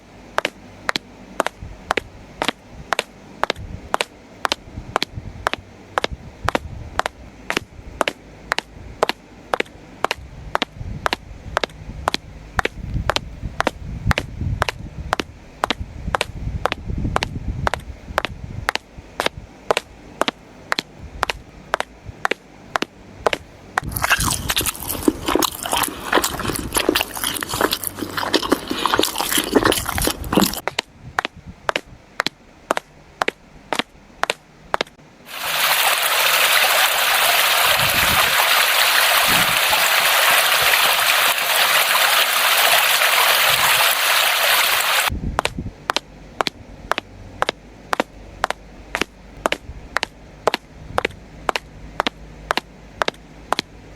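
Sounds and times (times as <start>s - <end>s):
water gushing: 23.9s - 30.6s, 35.3s - 45.1s.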